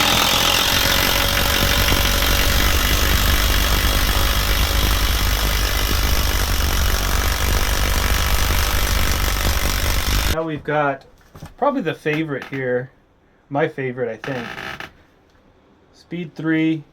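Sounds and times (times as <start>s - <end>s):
impact wrench hammering: 0.0s - 10.4s.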